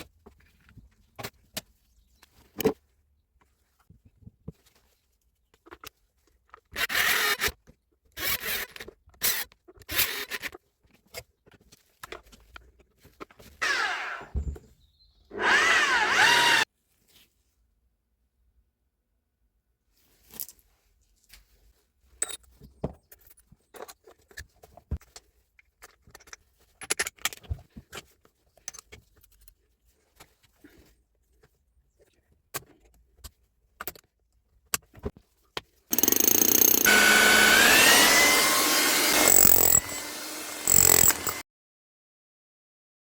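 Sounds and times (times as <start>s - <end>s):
rotary hammer motor whining: 13.6s - 14.5s, 15.3s - 16.6s, 35.9s - 41.4s.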